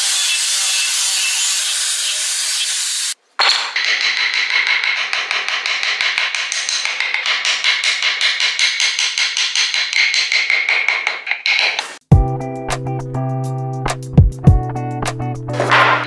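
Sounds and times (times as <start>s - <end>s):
fast hammer taps: 3.7s - 11.8s.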